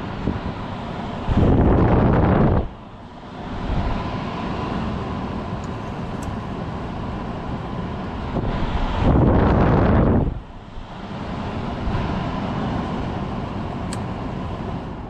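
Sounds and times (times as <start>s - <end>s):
air conditioner fan whoosh: 0.0s - 15.0s
wind blowing into microphone: 1.1s - 2.8s, 8.2s - 10.6s.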